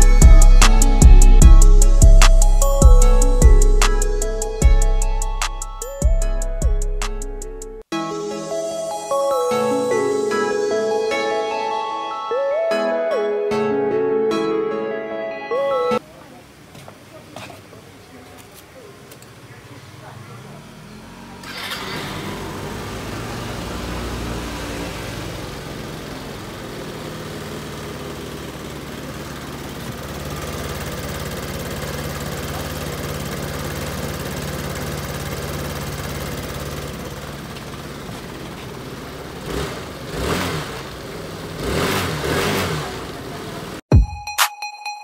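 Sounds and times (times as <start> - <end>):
scooter engine idling: 0.0 - 6.7, 18.0 - 43.9.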